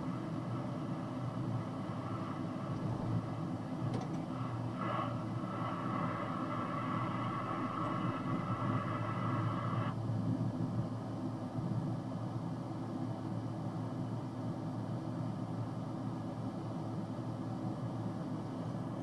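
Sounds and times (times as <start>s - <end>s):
engine and road rumble: 0.0s - 11.9s
click: 3.9s - 4.3s.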